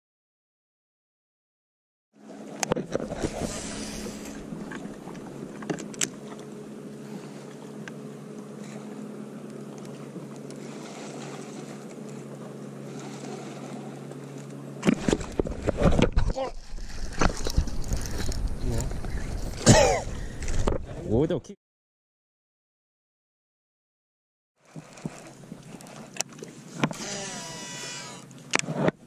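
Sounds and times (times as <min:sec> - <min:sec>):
boat motor humming: 0:02.2 - 0:21.0, 0:24.6 - 0:29.0.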